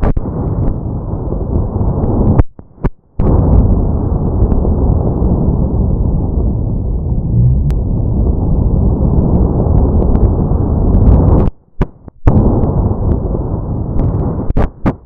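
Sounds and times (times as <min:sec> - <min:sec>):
firecracker blast rumbling: 0:03.2 - 0:11.3.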